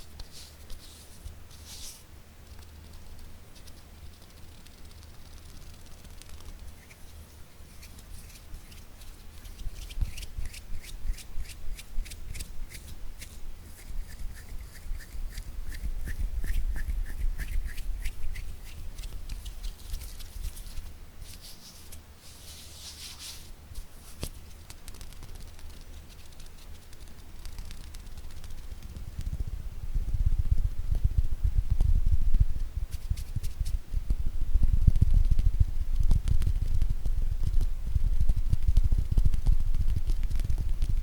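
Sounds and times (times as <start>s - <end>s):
skin rubbing and swishing: 0.0s - 2.0s, 3.5s - 29.1s, 32.9s - 33.8s.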